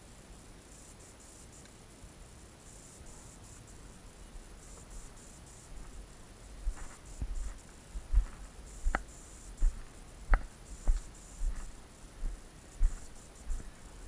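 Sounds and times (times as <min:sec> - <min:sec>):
footsteps walking: 0:04.7 - 0:14.0
sharp clicks: 0:08.7 - 0:09.3, 0:10.3 - 0:11.1.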